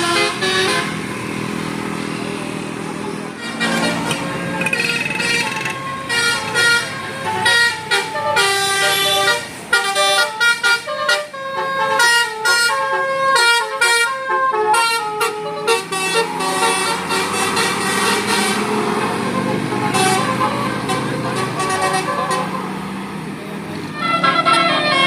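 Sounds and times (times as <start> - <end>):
multi-tone bus horn tune: 0.0 - 1.6, 2.9 - 25.0.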